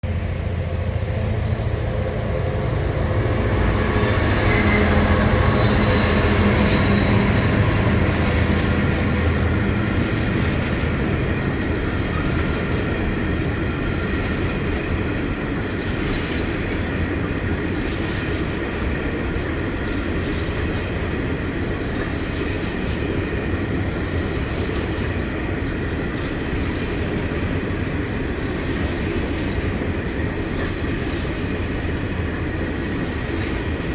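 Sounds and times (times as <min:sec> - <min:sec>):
diesel locomotive engine drone: 0:00.0 - 0:33.9
high-pitched wheel squeal: 0:01.0 - 0:18.4.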